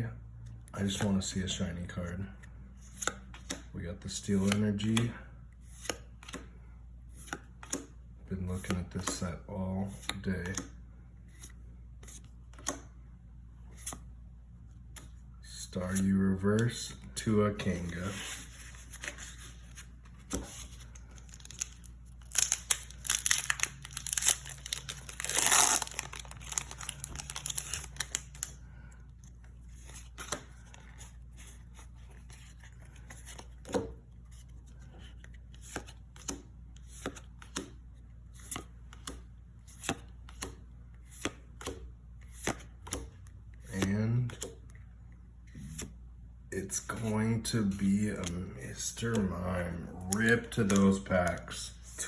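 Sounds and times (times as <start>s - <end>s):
cards flipping with soft snaps: 2.3s - 8.0s, 8.6s - 9.3s, 9.9s - 13.0s, 14.7s - 28.6s, 29.2s - 46.0s, 46.9s - 49.4s, 50.0s - 52.0s
foil wrapper tearing and crinkling: 21.3s - 28.4s.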